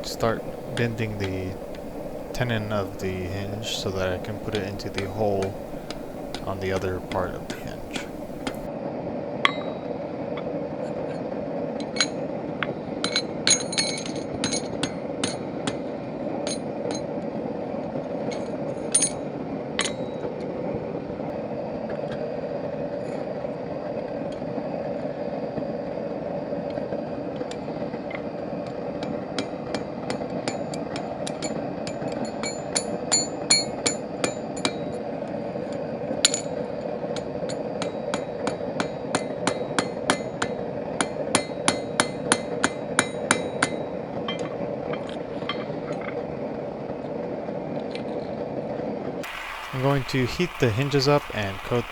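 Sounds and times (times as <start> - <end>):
steady rushing noise: 0.0 - 8.7.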